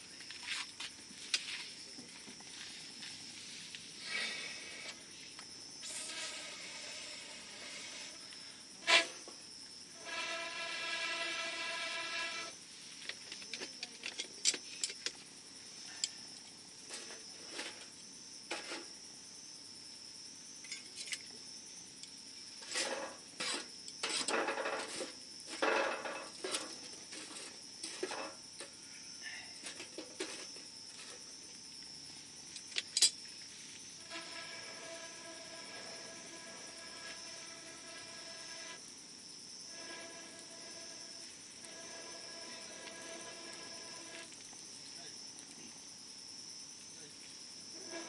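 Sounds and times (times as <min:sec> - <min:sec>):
high thin tone: 0:10.0 - 0:12.5, 0:34.0 - 0:38.8
wood fire crackling: 0:41.2 - 0:45.7.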